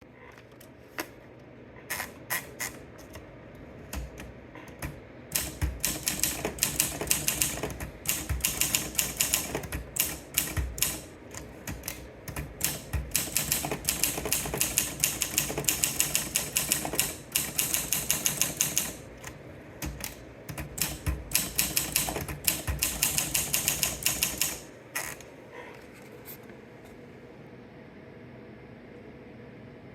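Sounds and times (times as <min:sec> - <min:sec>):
typewriter type-bar clacks: 0:03.9 - 0:24.7.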